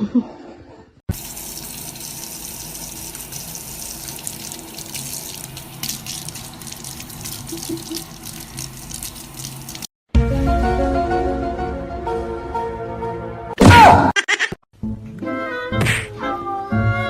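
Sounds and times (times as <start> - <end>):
running water rushing: 1.1 - 9.9.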